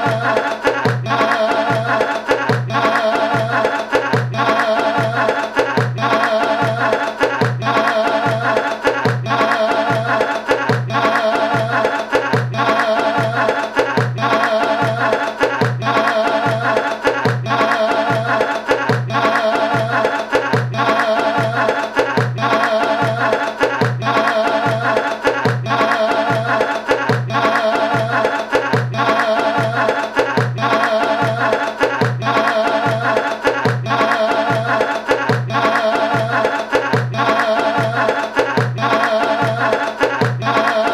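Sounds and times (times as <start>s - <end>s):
steady drum beat: 0.0s - 40.9s.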